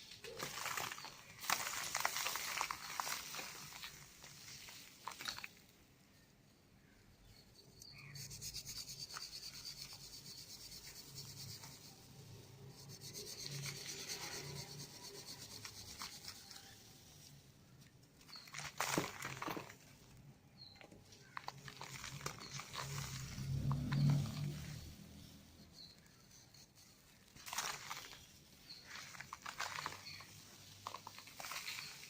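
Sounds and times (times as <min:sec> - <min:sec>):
gritty scraping of crumbled cement: 0:00.0 - 0:05.8, 0:07.2 - 0:32.0
cement crunch: 0:00.2 - 0:05.8, 0:18.2 - 0:32.0.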